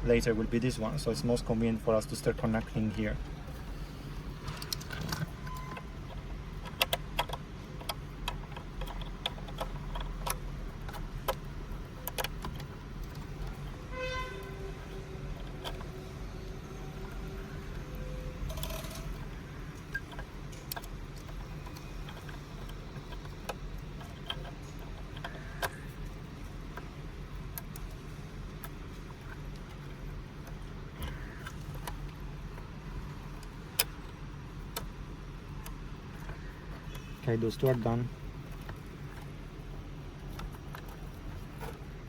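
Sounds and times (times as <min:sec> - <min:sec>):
steady low hum: 0:00.0 - 0:42.0
plastic plugs clicking and rattling: 0:04.4 - 0:13.8, 0:17.0 - 0:41.9
faint whine: 0:10.3 - 0:20.8.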